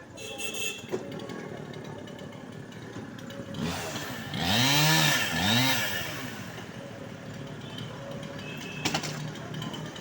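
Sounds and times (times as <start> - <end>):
chainsaw revving: 3.5 - 6.6.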